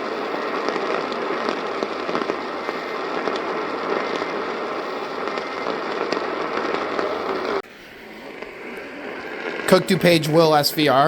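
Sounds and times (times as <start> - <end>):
radio static hiss with crackles: 0.0 - 11.0.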